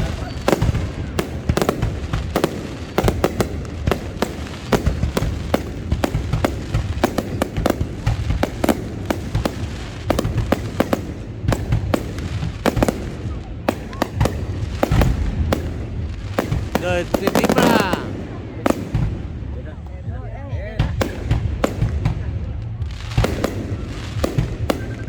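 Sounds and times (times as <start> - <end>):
fireworks bangs and pops: 0.0 - 25.0
low rumble of bursting shells: 0.0 - 25.0.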